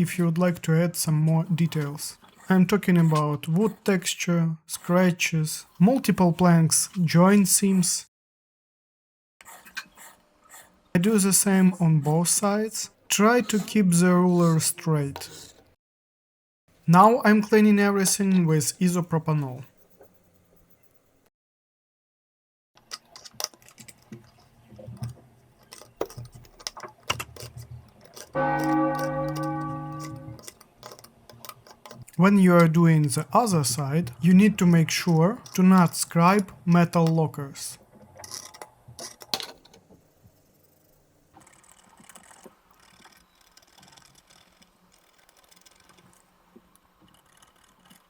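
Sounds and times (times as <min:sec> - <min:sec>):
ringing chime-like tone: 0:28.4 - 0:30.4
small irregular ticks: 0:40.4 - 0:48.0.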